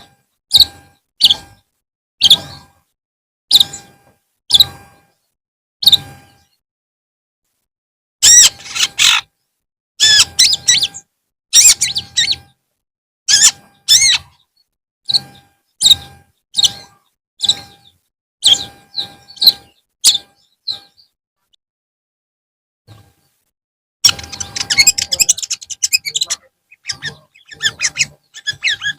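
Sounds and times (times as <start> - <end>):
shrike singing chattering phrases: 24.1 - 28.9.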